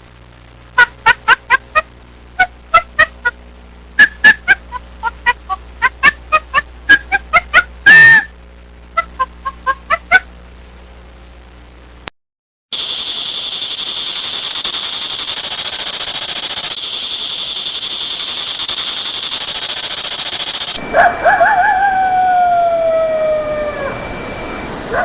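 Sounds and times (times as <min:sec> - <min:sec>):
insects buzzing: 0:12.7 - 0:21.4
rooster crowing: 0:20.8 - 0:25.0.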